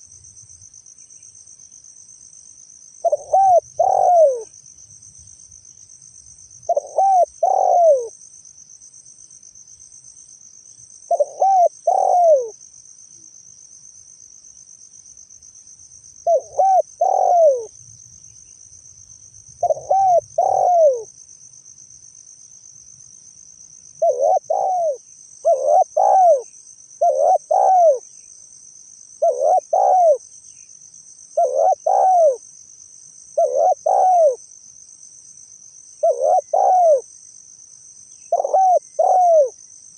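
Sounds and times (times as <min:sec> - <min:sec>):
high-pitched insect trill: 0:00.0 - 0:39.9
dove cooing: 0:03.0 - 0:04.5, 0:06.7 - 0:08.1, 0:11.1 - 0:12.6, 0:16.2 - 0:17.7, 0:19.6 - 0:21.1, 0:24.0 - 0:28.1, 0:29.2 - 0:30.2, 0:31.4 - 0:32.4, 0:33.4 - 0:34.4, 0:36.0 - 0:37.1, 0:38.3 - 0:39.6.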